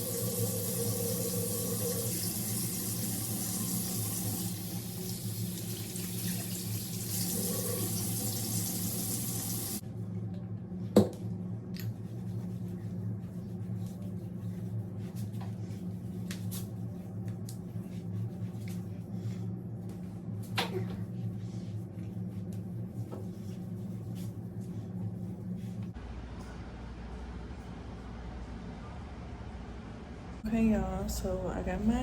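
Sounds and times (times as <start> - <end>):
sink tap running: 0.0 - 9.8
steady low hum: 9.7 - 32.0.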